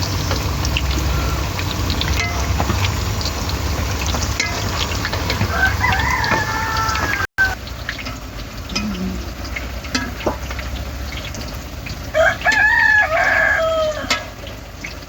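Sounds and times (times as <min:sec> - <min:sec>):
rooster crowing: 0:05.3 - 0:07.6, 0:12.1 - 0:14.4.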